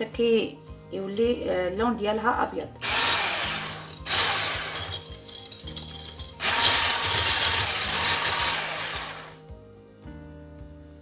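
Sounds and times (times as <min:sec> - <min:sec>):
electric hand mixer beating: 0:02.8 - 0:09.4.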